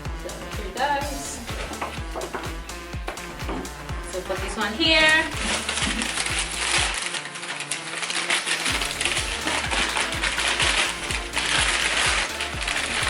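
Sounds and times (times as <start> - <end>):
background music with beat: 0.0 - 7.1, 8.6 - 13.0
packaging rustling: 5.4 - 13.0.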